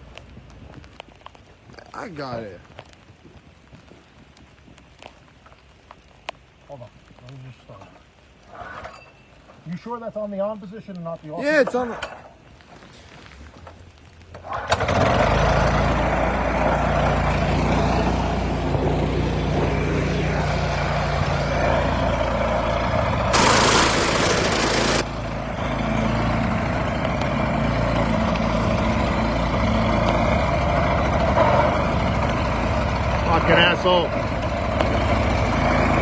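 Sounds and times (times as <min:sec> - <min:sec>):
snowblower engine running: 0:14.7 - 0:36.0
loud rushing hiss: 0:23.3 - 0:25.2.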